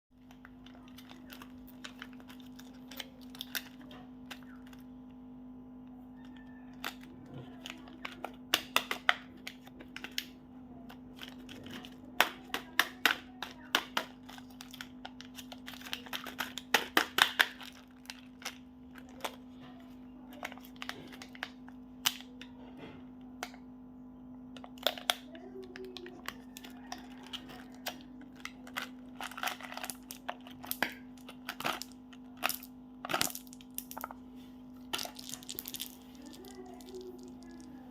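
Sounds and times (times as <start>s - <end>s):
steady low hum: 0.1s - 37.9s
packaging crinkling: 0.2s - 4.9s, 10.9s - 22.3s, 24.6s - 34.1s, 34.8s - 37.8s.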